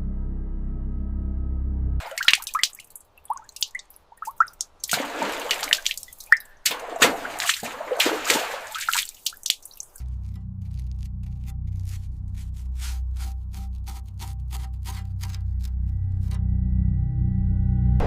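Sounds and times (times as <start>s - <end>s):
water dripping and splashing: 2.0s - 10.0s.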